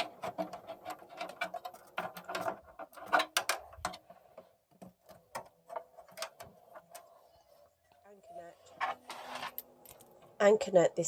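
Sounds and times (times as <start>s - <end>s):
cables clicking and rattling: 0.0s - 8.0s.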